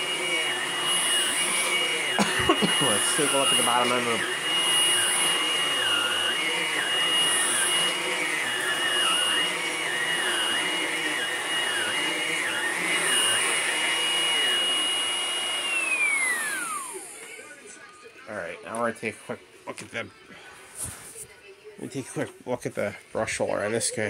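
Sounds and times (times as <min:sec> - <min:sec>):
vacuum cleaner running: 0:00.0 - 0:18.6.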